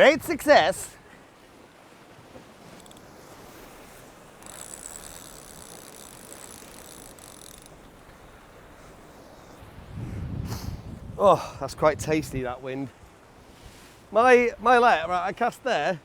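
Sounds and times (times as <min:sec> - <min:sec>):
wind on microphone: 0:02.2 - 0:14.1
fishing reel whirring: 0:02.8 - 0:09.5.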